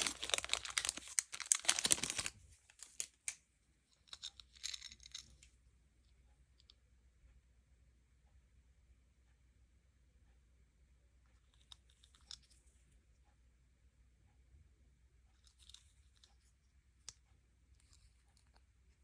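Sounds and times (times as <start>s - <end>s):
packaging crinkling: 0.0s - 3.2s.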